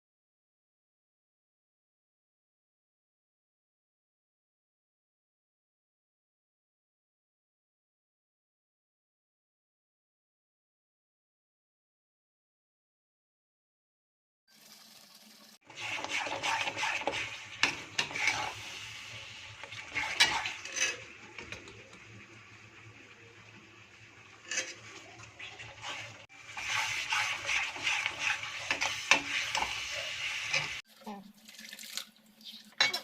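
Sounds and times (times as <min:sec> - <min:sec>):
utensil scraping and clinking pot: 0:15.7 - 0:22.1, 0:24.2 - 0:30.8, 0:31.6 - 0:33.0.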